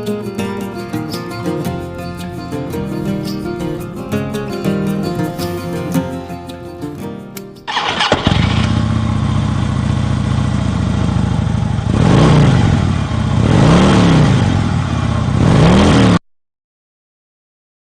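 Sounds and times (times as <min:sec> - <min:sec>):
scooter engine idling and revving: 0:07.7 - 0:16.2.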